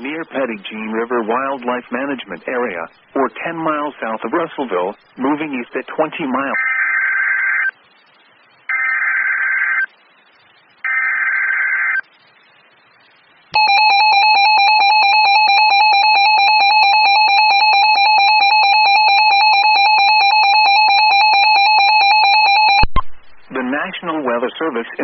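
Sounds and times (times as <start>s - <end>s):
two-tone attention signal: 13.6s - 22.9s.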